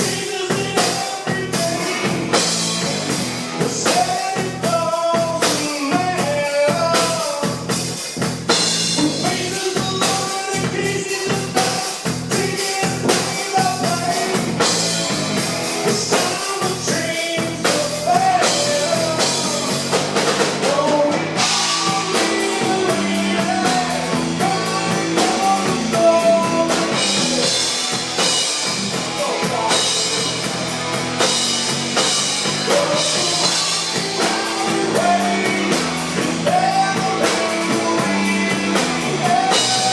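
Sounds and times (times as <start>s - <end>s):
person singing: 0.0s - 2.8s, 3.6s - 7.7s, 9.0s - 27.8s, 29.0s - 30.6s, 32.5s - 39.9s
drums: 0.0s - 39.9s
electric guitar: 0.0s - 39.9s.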